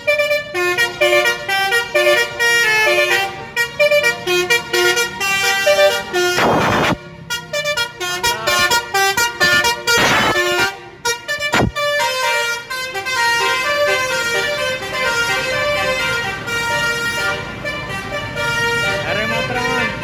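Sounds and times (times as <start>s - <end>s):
musical bus horn melody: 0.0s - 20.0s
short noisy horn blast: 5.6s - 7.3s, 8.3s - 10.8s, 11.4s - 11.9s.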